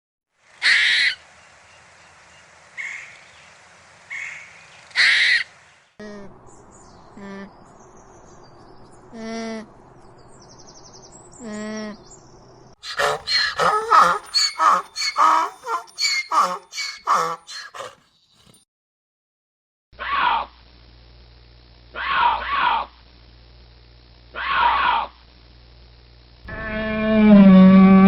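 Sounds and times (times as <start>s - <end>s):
crow-like cawing: 0.6s - 1.2s, 4.1s - 5.5s, 12.8s - 18.0s
small birds chirping: 0.6s - 18.5s
animal wavering calls: 12.8s - 18.0s.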